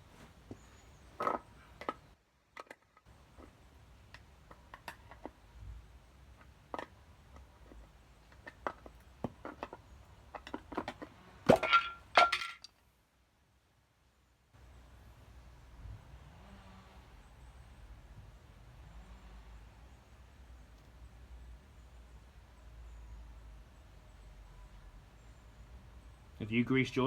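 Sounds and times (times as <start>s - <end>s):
metal parts clattering: 9.6s - 12.7s.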